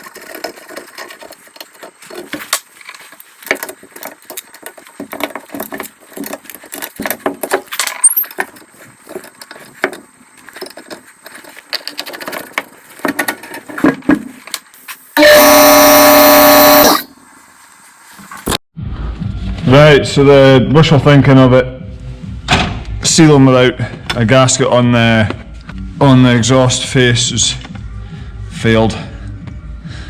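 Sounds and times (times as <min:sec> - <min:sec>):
loud pitched hum: 0:15.2 - 0:17.2.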